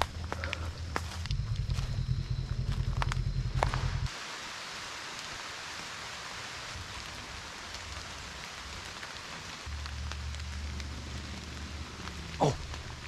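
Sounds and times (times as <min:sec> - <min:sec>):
rain pattering on leaves: 0:00.0 - 0:01.7, 0:02.6 - 0:13.0
low rumble: 0:00.0 - 0:04.1.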